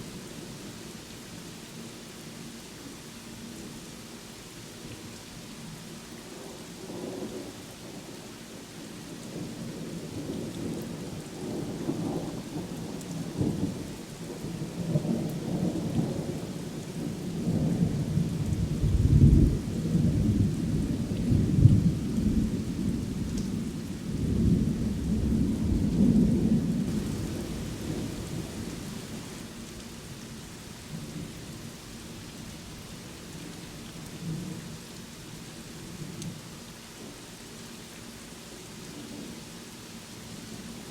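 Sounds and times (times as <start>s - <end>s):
steady rainfall: 0.0s - 40.9s
rolling thunder rumble: 17.4s - 29.5s.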